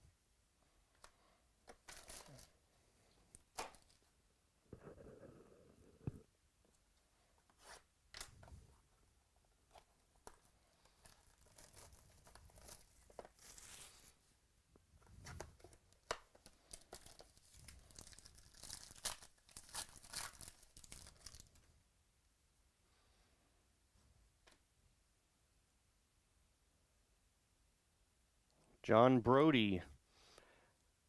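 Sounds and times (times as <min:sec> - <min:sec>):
cards and packaging rustling: 0:00.9 - 0:04.2, 0:09.5 - 0:14.2, 0:15.0 - 0:21.7
card pack wrapper tearing: 0:01.7 - 0:02.6, 0:10.2 - 0:14.1, 0:15.3 - 0:21.6.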